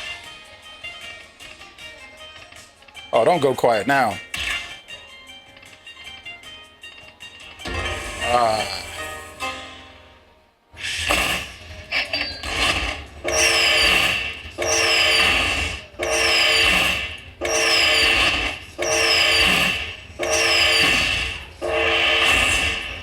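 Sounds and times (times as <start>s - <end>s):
slot machine bonus chord with whistles: 7.6s - 10.1s, 10.8s - 23.0s.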